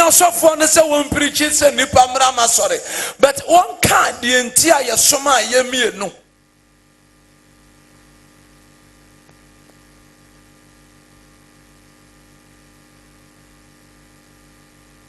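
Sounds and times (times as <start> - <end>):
electrical hum with hiss: 0.0 - 15.0.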